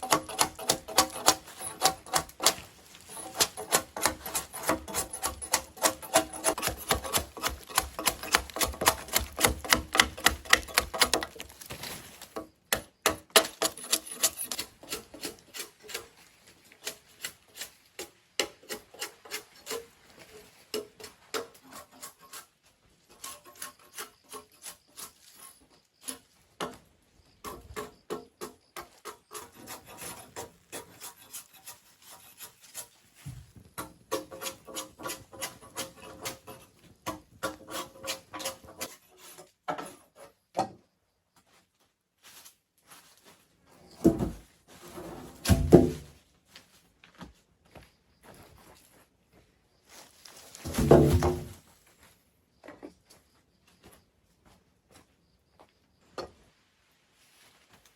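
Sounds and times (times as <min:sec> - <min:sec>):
blade scraping wood: 0:00.0 - 0:12.4, 0:13.0 - 0:26.3, 0:29.0 - 0:33.2, 0:33.8 - 0:40.4, 0:50.6 - 0:51.6.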